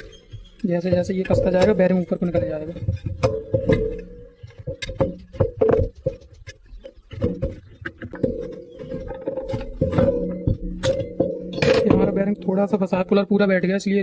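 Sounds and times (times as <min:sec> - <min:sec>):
short squeaks: 0:00.0 - 0:00.7.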